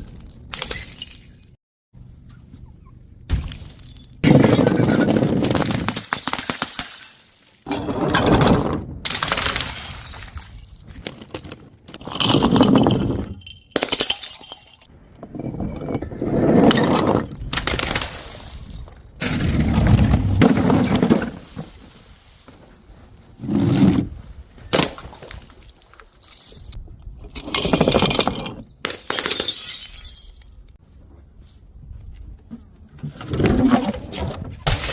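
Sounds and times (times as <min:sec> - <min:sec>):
glass bottles shattering: 0:00.0 - 0:01.6, 0:03.3 - 0:08.4, 0:12.0 - 0:14.9, 0:27.7 - 0:30.7, 0:34.6 - 0:34.9
tinkle of falling glass shards: 0:28.8 - 0:30.6.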